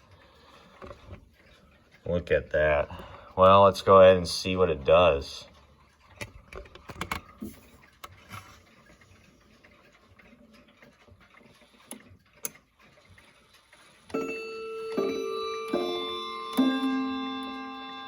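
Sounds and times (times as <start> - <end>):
clock chime ringing: 14.1 - 18.0.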